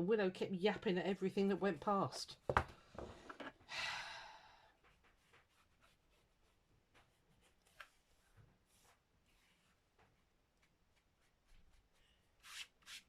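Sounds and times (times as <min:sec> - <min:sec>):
faint taps and rustles: 0:04.8 - 0:06.0, 0:06.8 - 0:12.1.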